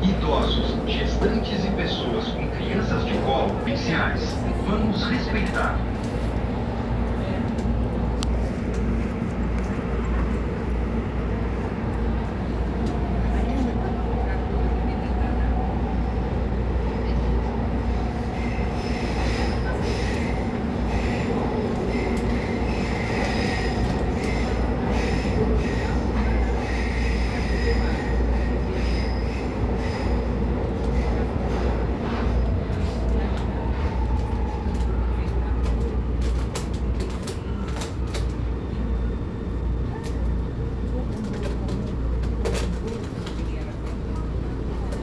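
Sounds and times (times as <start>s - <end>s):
train rumbling on rails: 0.0s - 45.0s.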